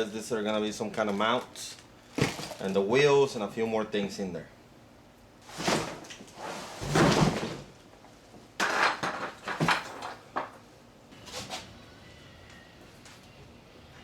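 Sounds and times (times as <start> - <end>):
scrapes and knocks of parts handled: 8.6 - 10.6.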